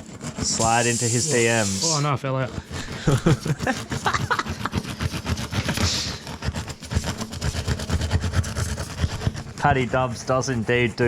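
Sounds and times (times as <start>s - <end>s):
tool rasping through rubber: 0.0s - 11.0s.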